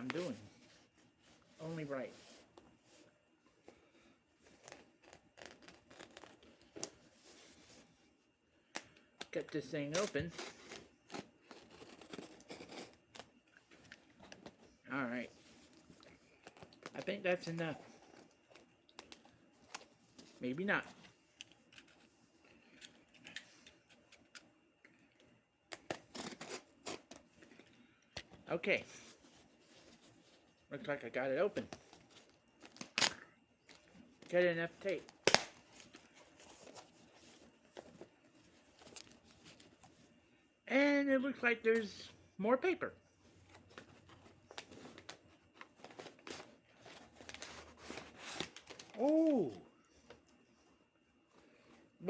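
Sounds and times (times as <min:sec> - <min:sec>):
packing paper rustling: 0:43.2 - 0:49.5.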